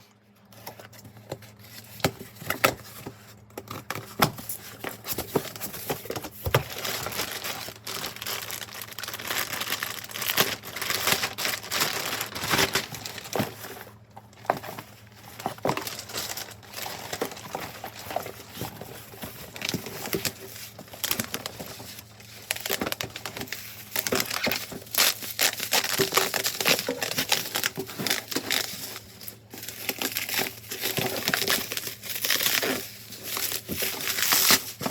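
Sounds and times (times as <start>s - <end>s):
plastic and paper crinkling: 0.2s - 34.9s.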